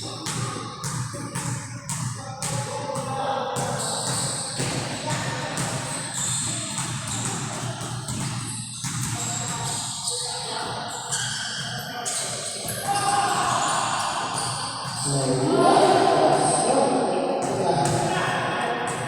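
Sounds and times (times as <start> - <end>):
basketball bouncing on court: 0.0 - 9.9, 17.4 - 18.1
crowd voices echoing: 10.2 - 19.0.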